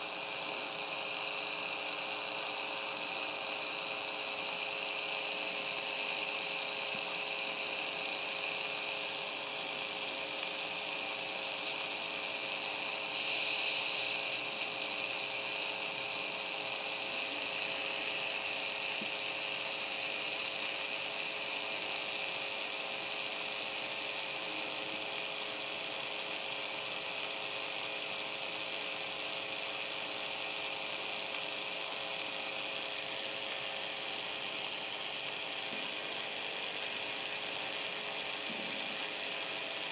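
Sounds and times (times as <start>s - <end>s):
radio static hiss and hum: 0.0s - 39.9s.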